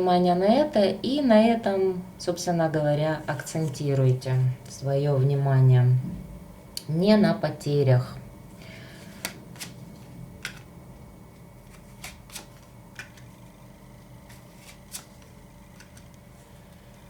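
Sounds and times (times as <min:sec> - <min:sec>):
faint steady hum: 0:00.0 - 0:17.0
cards clicking and snapping: 0:09.2 - 0:09.8, 0:10.4 - 0:10.7, 0:11.7 - 0:13.3, 0:14.2 - 0:16.2.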